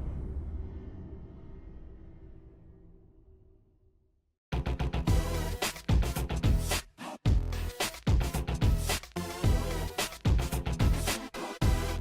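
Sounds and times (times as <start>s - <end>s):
background music low notes: 4.6s - 12.0s.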